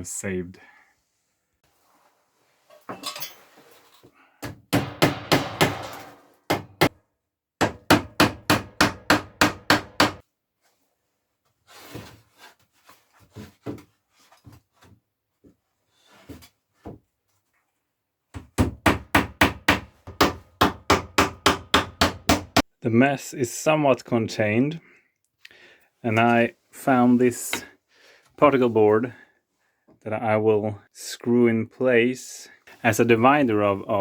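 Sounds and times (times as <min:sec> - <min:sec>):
hammer driving nails into wood: 0:04.4 - 0:07.0, 0:07.6 - 0:10.2, 0:18.4 - 0:22.6.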